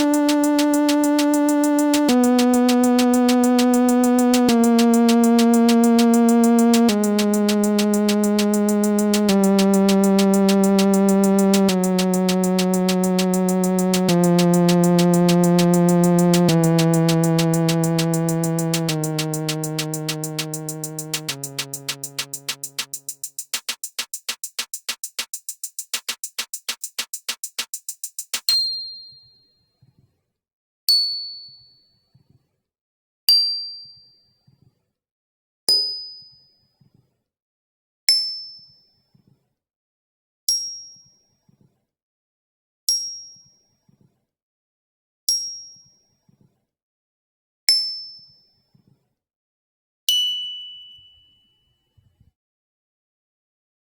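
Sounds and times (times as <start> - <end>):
fast ticking beat: 0.0 - 28.5
bright ding: 50.1 - 51.6.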